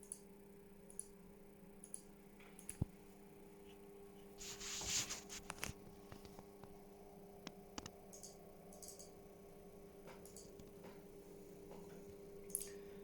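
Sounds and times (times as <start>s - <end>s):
computer mouse clicks: 0.0s - 0.2s, 0.9s - 1.2s, 1.8s - 2.9s, 7.4s - 9.2s, 10.1s - 11.0s, 12.5s - 12.8s
scraping rustle: 4.4s - 6.3s.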